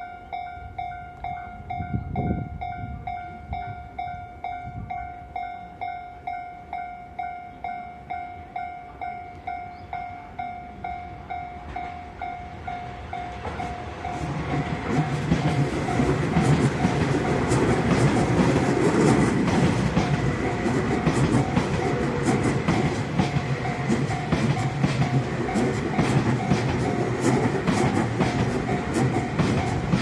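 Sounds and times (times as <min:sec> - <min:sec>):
level-crossing warning bell dinging: 0:00.0 - 0:30.0
train wheels clacking on rail joints: 0:11.6 - 0:30.0.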